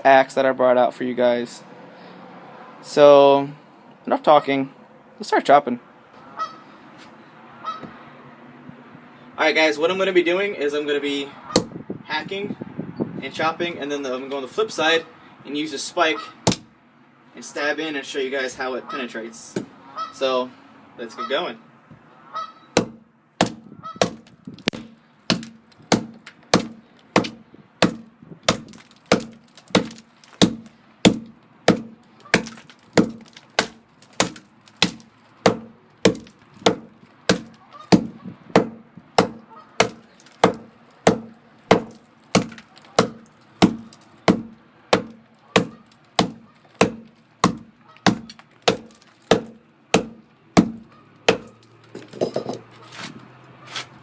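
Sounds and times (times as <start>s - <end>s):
hatchet chopping into a log: 11.6s - 11.8s, 16.4s - 16.7s, 22.8s - 52.5s.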